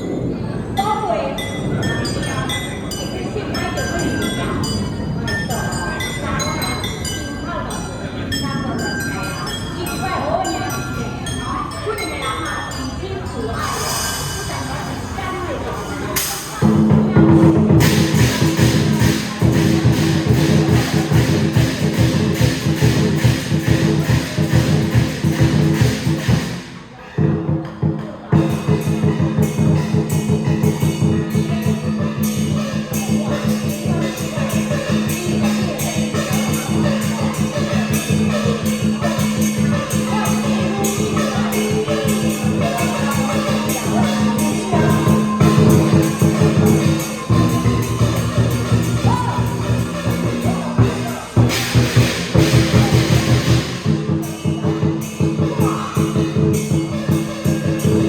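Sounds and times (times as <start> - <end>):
steady ringing tones: 0.0 - 15.6, 16.6 - 27.0, 28.2 - 58.0
cymbal crashes: 16.2 - 58.0
drum beating fast rhythm: 16.2 - 58.0.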